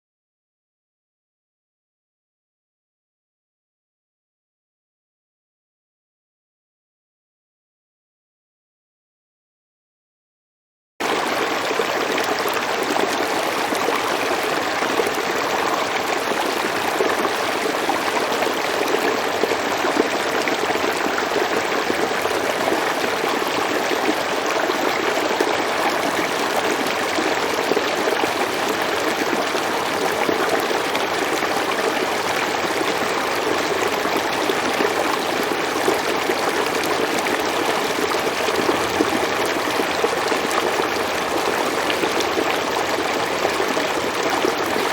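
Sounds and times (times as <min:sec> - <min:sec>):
water flowing in a stream: 0:11.0 - 0:44.9.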